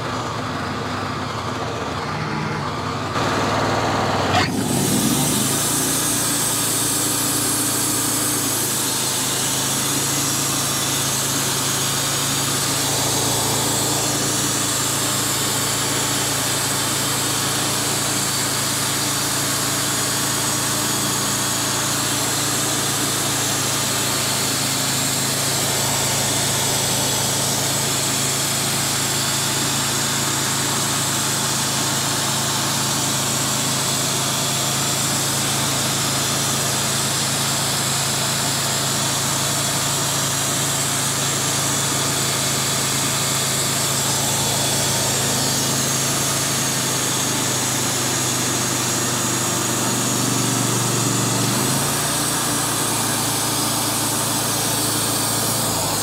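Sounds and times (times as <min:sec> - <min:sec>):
sawmill engine humming: 0:00.0 - 0:56.0
band blade hissing through log: 0:04.3 - 0:17.4, 0:42.0 - 0:56.0.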